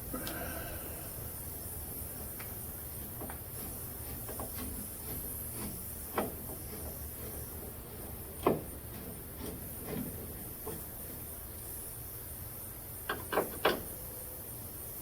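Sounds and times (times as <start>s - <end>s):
hand tools clicking and knocking: 2.2s - 11.3s, 13.1s - 14.0s.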